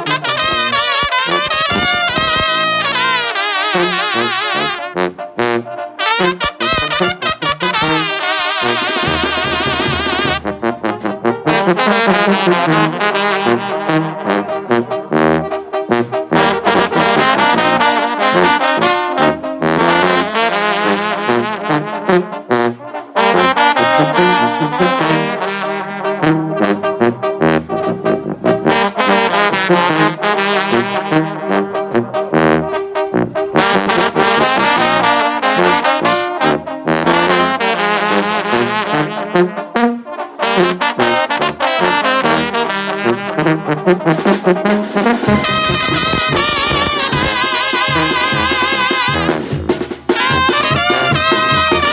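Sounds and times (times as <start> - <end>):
brass band playing lively music: 0.0 - 51.9
trombones and trumpets: 0.0 - 51.9
steady beat: 6.7 - 12.5, 44.2 - 51.9.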